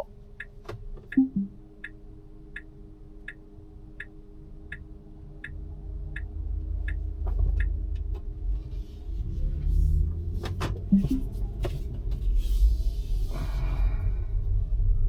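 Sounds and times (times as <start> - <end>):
turn signal ticking: 0.0 - 7.8, 10.8 - 11.3
low road rumble: 0.0 - 15.0.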